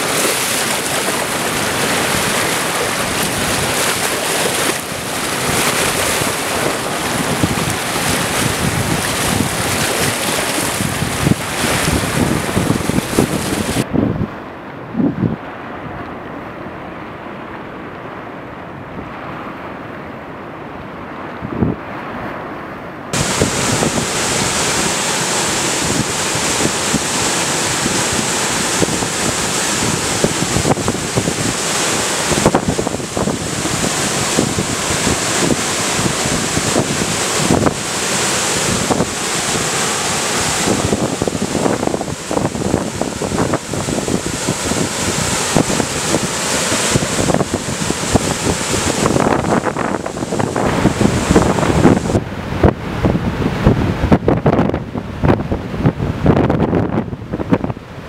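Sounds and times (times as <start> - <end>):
floodwater rushing through gates: 0.0 - 13.9, 23.1 - 52.4
wind buffeting microphone: 0.0 - 15.6, 23.1 - 58.0.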